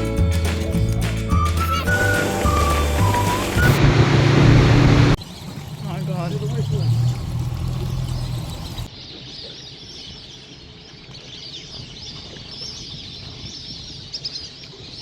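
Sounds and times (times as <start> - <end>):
flock of waterbirds calling: 1.7 - 3.8, 5.2 - 15.0
low motor hum: 1.9 - 8.9.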